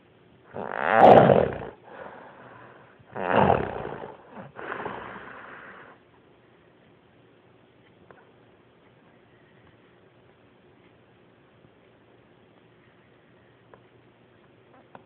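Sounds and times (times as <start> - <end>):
person snoring loudly: 0.5 - 2.1, 3.1 - 5.4
long breath: 1.8 - 3.0, 4.4 - 6.0.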